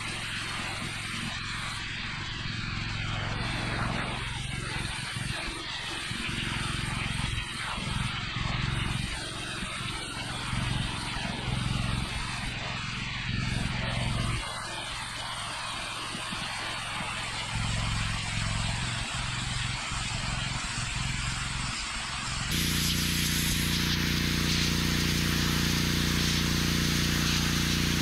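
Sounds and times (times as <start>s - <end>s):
pressure washer engine running: 0.0s - 28.0s
water spray hissing: 22.5s - 28.0s.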